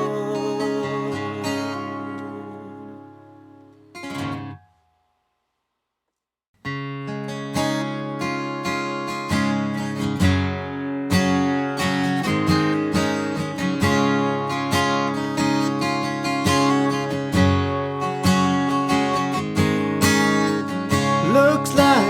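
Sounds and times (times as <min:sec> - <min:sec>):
acoustic guitar strumming chords: 0:00.0 - 0:04.8, 0:06.6 - 0:22.0.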